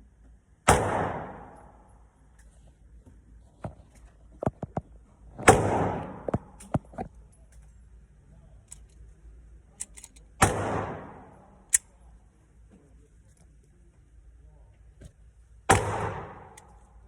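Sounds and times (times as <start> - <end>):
pistol shots echoing: 0.7 - 1.7, 5.4 - 6.6, 10.4 - 11.6, 15.7 - 16.7.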